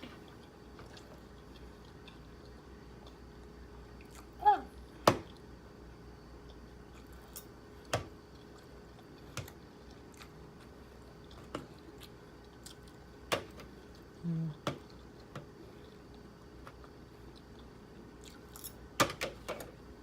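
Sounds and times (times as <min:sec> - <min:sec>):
close-miked chewing crunches: 0:00.1 - 0:04.4, 0:08.2 - 0:13.1.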